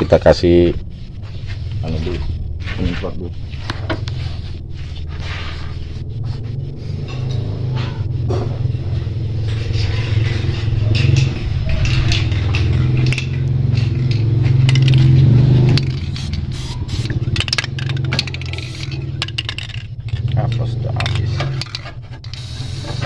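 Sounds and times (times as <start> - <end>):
low hum: 0.0 - 23.0
aerosol spray hissing: 16.1 - 17.2, 22.4 - 23.0.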